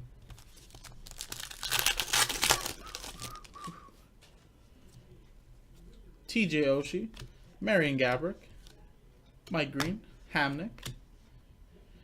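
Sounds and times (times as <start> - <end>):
foil wrapper tearing and crinkling: 0.4 - 3.6.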